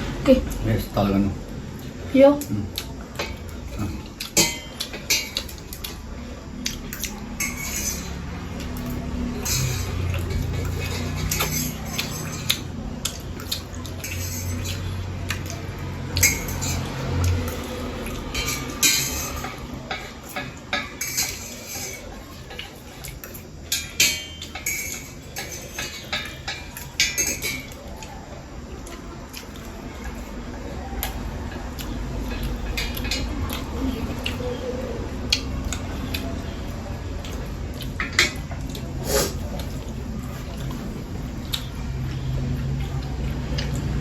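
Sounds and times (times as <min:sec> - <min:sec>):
utensils clinking on a dish: 0:03.1 - 0:06.0, 0:06.6 - 0:28.0, 0:37.2 - 0:41.7.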